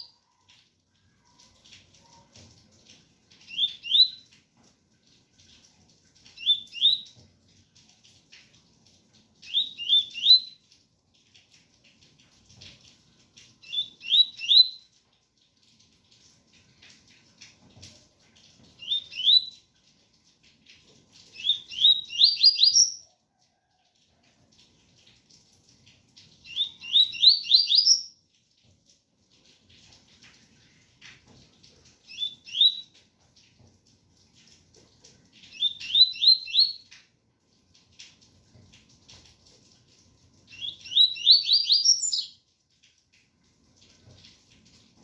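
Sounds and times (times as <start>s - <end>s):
faint rain pattering: 0.0s - 45.0s
bird singing whistled phrases: 3.5s - 4.2s, 9.5s - 10.6s, 13.6s - 14.8s, 18.8s - 19.5s, 21.4s - 23.0s, 26.5s - 28.1s, 32.1s - 32.9s, 35.5s - 36.8s, 40.6s - 42.4s.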